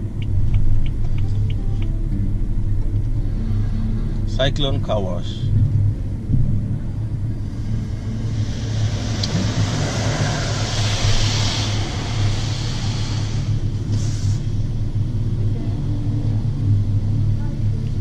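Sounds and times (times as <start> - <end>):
car engine idling: 0.0 - 18.0
water spray hissing on car: 7.5 - 14.7.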